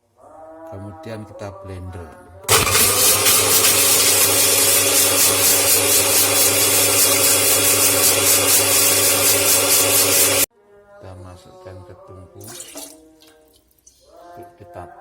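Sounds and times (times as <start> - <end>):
blender whirring: 2.5 - 10.5.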